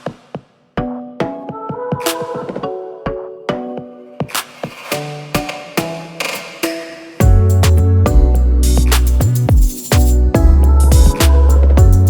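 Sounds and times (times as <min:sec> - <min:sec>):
drum beat: 0:04.2 - 0:12.0
sustained keyboard chords: 0:07.2 - 0:12.0.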